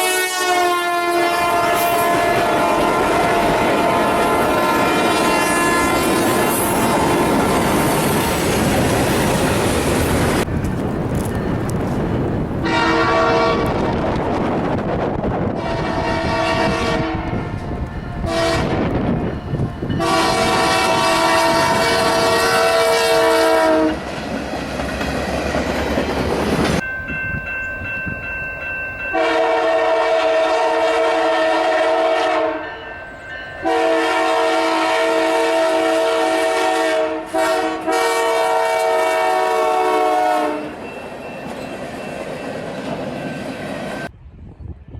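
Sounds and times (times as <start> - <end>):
train horn blasts: 0.0 - 7.7, 12.6 - 14.0, 15.5 - 24.0, 29.1 - 32.8, 33.6 - 40.8
rumble and clatter of trains: 1.5 - 44.9.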